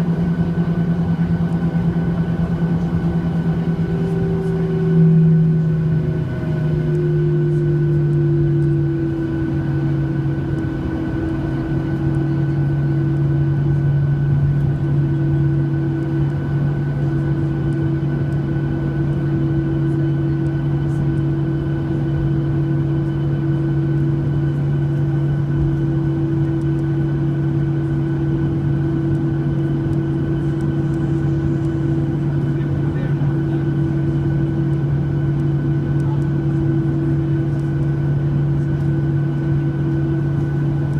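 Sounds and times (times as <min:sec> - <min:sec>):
jet engines droning in cabin: 0:00.0 - 0:40.9.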